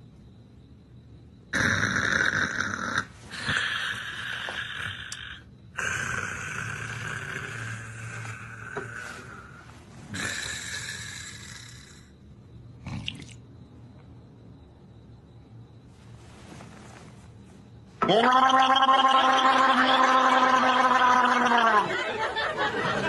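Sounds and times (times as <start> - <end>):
man snoring loudly: 1.6 - 12.1.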